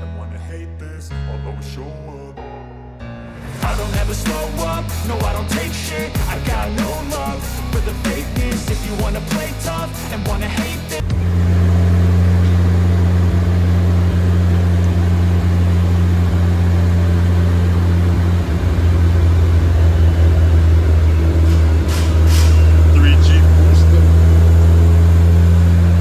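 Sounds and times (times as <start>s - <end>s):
car engine running: 3.6s - 26.0s
short hisses: 21.4s - 22.9s.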